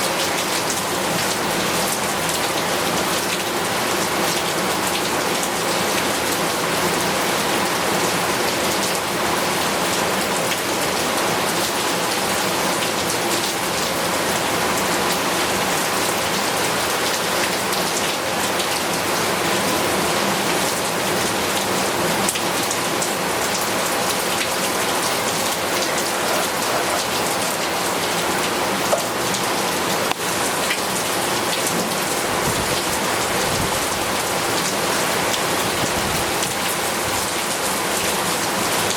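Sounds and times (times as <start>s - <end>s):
heavy rain on hard surfaces: 0.0s - 38.9s.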